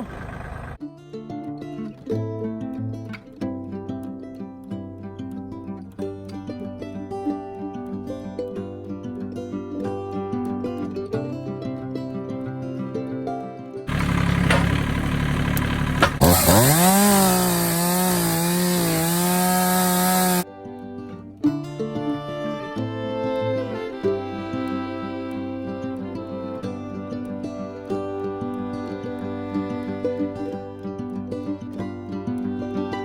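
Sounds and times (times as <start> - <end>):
gentle instrumental with plucked notes: 0.8 - 13.9, 20.4 - 33.0
chainsaw revving: 13.9 - 20.4.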